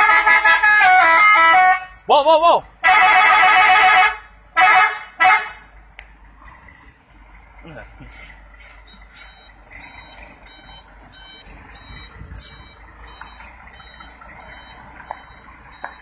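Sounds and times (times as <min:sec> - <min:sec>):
low traffic rumble: 0:00.0 - 0:16.0
high electronic beeps: 0:08.8 - 0:16.0.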